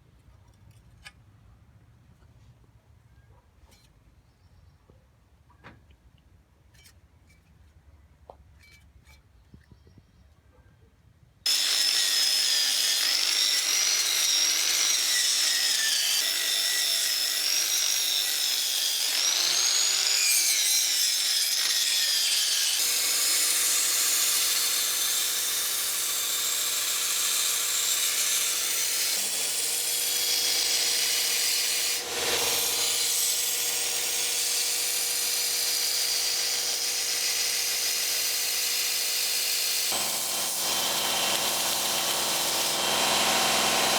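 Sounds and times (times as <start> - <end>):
electric power tool running: 11.5 - 21.7, 22.3 - 43.9.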